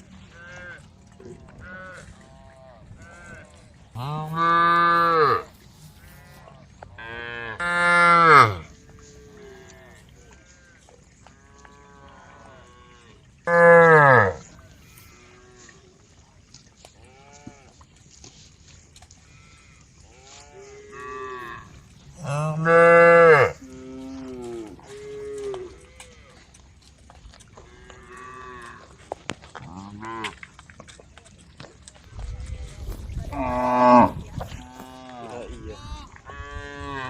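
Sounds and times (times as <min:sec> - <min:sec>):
cow mooing loudly: 0:04.0 - 0:10.0, 0:11.5 - 0:15.7, 0:20.2 - 0:26.2, 0:33.3 - 0:37.0
fainter moos from other cows: 0:19.3 - 0:26.5.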